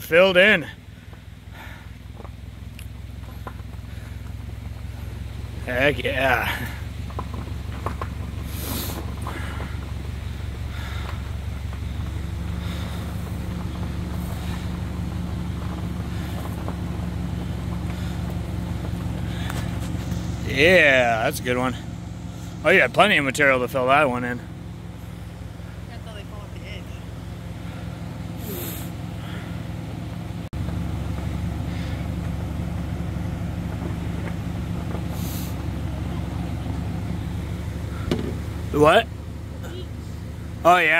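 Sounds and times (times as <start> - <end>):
car engine humming: 0.0 - 40.9
road noise: 0.0 - 40.9.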